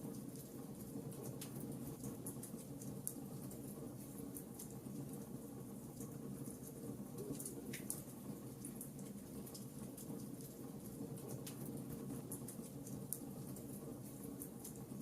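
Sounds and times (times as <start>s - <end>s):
wood fire crackling and popping: 6.0s - 15.0s.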